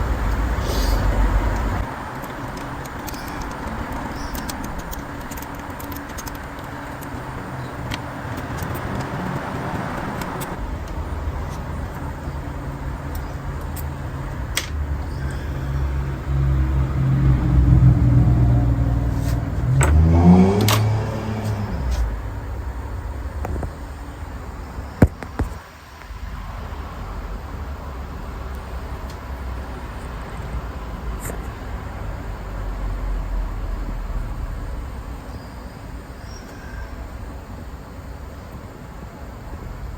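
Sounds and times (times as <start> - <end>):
steady hiss: 0.0 - 16.8
car engine idling: 0.0 - 25.4
light clicks: 1.5 - 12.1.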